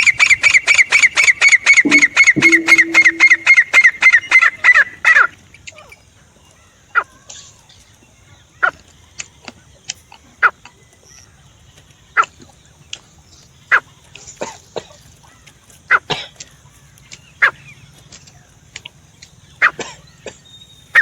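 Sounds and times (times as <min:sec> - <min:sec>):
francolin calling: 0:01.9 - 0:03.6.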